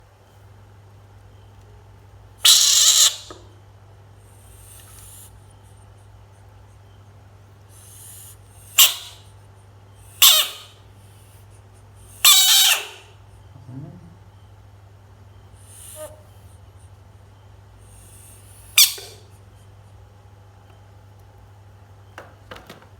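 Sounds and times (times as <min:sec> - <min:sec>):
frog screaming: 0:02.4 - 0:03.3, 0:10.2 - 0:10.8, 0:12.2 - 0:13.1.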